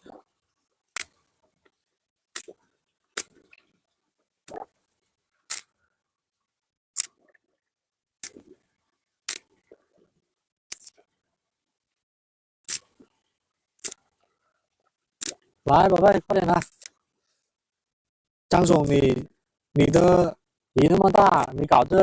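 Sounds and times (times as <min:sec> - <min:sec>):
sharp clicks: 0:15.2 - 0:15.4.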